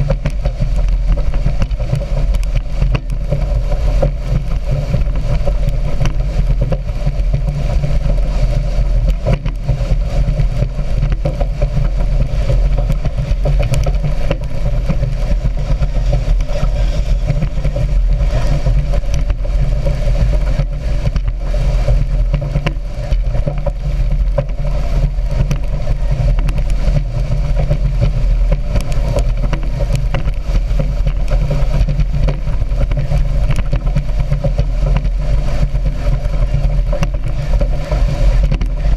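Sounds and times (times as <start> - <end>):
speedboat engine running: 0.0 - 38.9.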